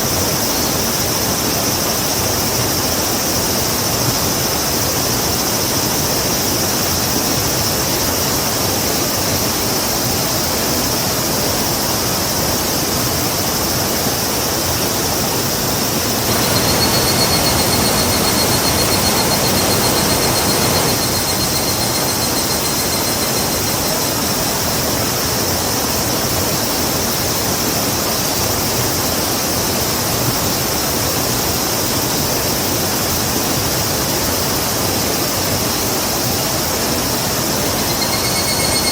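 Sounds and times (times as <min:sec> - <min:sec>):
river rushing: 0:14.6 - 0:26.0
faint high pulsing trill: 0:16.1 - 0:24.7, 0:37.6 - 0:38.9.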